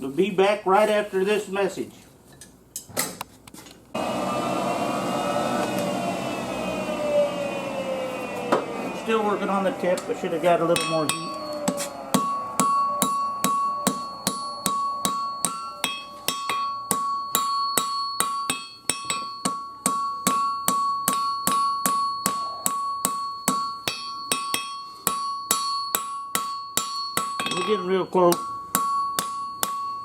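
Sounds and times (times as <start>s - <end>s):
anvil ringing: 9.2s - 30.0s
hammer striking steel on anvil: 10.0s - 30.0s.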